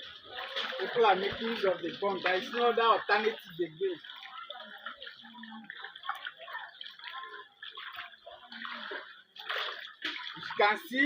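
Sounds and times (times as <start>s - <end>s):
floodwater moving: 0.0s - 11.0s.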